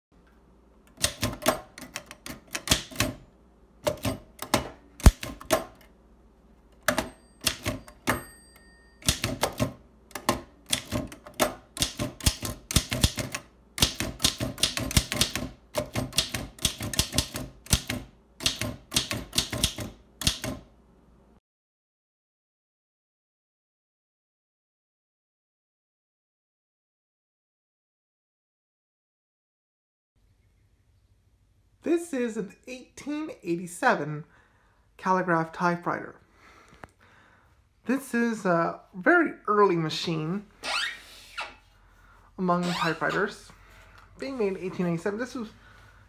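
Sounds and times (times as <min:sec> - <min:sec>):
typewriter key strikes clacking: 0:01.0 - 0:03.2, 0:06.8 - 0:08.2, 0:09.0 - 0:20.6.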